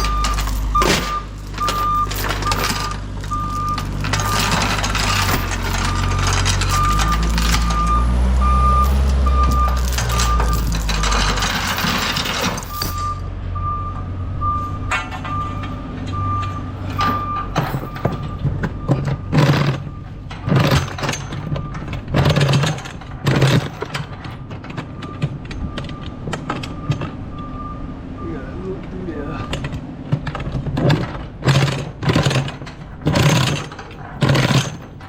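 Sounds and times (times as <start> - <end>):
reversing alarm beeping: 0.0 - 22.6, 24.3 - 29.7
low engine rumble: 0.0 - 35.0.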